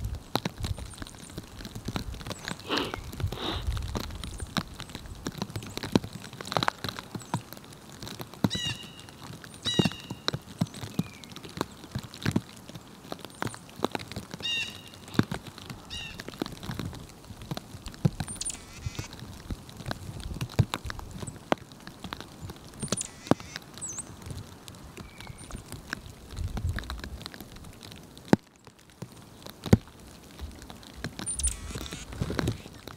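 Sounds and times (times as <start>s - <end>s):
short bird calls: 2.4s - 3.7s, 18.4s - 19.1s, 22.9s - 23.6s, 31.3s - 32.8s
woodpecker tapping on wood: 22.8s - 23.6s.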